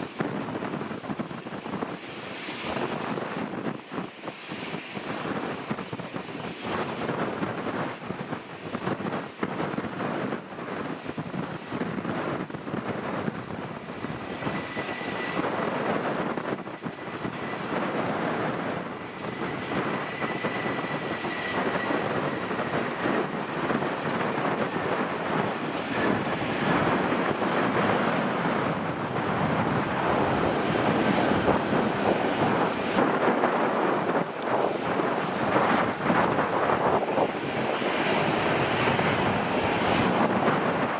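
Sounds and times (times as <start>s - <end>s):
high jet whine: 0.0s - 40.9s
jet engine rushing: 0.0s - 40.9s.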